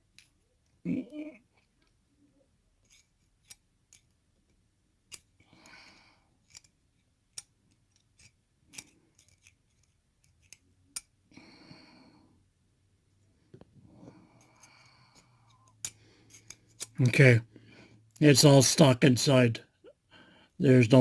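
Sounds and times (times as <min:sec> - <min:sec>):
metallic clicks of lock parts: 0:02.8 - 0:05.4, 0:06.4 - 0:11.2, 0:14.4 - 0:17.0.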